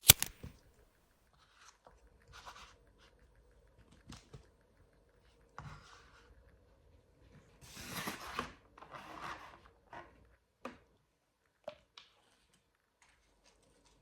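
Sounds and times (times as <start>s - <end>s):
sharp click: 0.0s - 0.6s
chewing crispy fried chicken: 1.4s - 7.6s.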